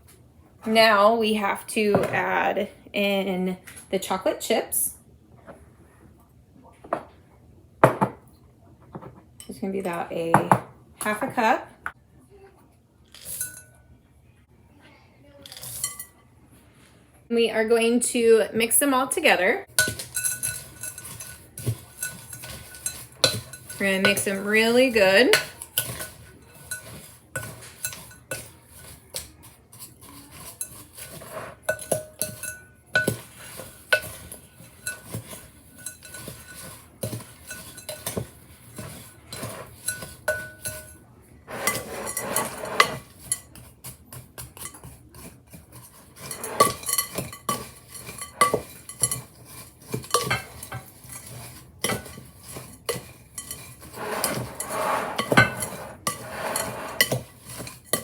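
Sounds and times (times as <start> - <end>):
spoon clinking against bowl: 13.2 - 13.8, 19.7 - 58.0
spoon stirring batter: 19.6 - 58.0.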